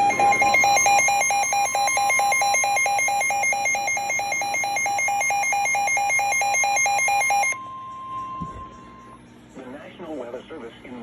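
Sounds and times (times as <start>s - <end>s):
rapid alarm beeping: 0.0s - 8.9s
steady warning alarm tone: 0.0s - 9.1s.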